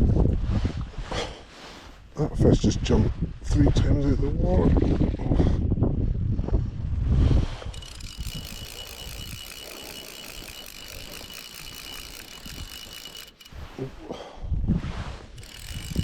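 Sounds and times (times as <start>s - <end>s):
wind rumble on microphone: 0.0s - 1.4s, 2.0s - 8.5s, 14.4s - 16.0s
fly reel ratchet clicking: 7.7s - 13.9s, 15.4s - 16.0s.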